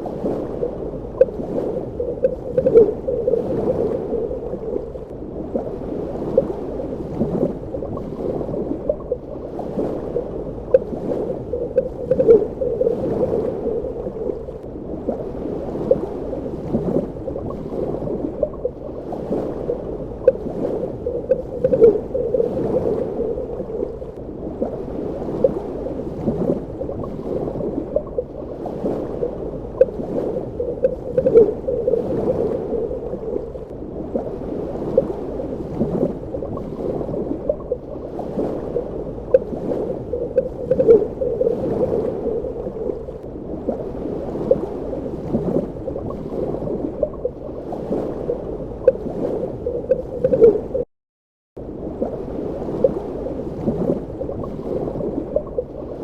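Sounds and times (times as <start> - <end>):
muffled underwater water rush: 0.0 - 50.9, 51.6 - 56.0
bubbling pops and gurgles: 0.6 - 4.9, 10.0 - 14.5, 20.2 - 24.0, 29.2 - 33.5, 38.8 - 43.2, 48.8 - 50.8.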